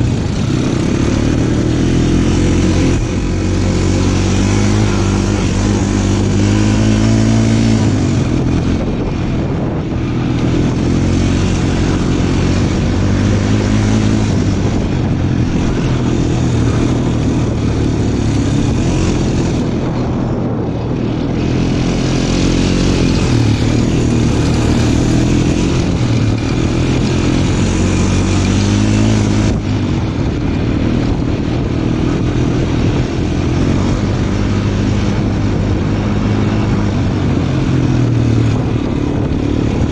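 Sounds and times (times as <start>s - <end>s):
off-road vehicle engine running: 0.0s - 39.9s.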